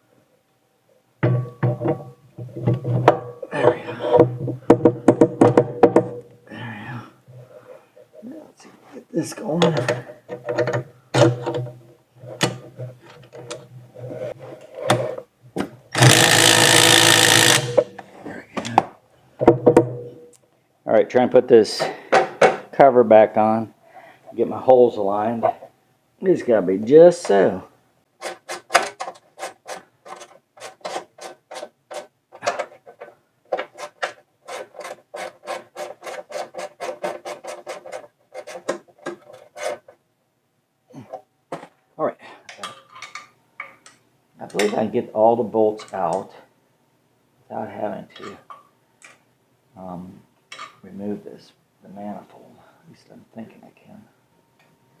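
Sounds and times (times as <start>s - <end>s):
impact driver running bolt: 16.0s - 18.0s
socket ratchet rasping strokes: 16.0s - 18.0s.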